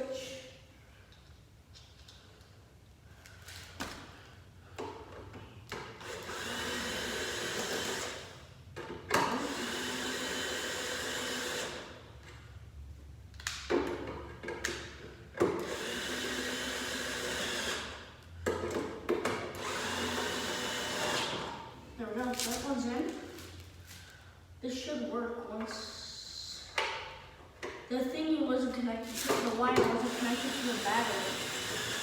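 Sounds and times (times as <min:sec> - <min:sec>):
power screwdriver driving screws: 0:15.6 - 0:18.0, 0:19.6 - 0:21.5, 0:29.9 - 0:32.0.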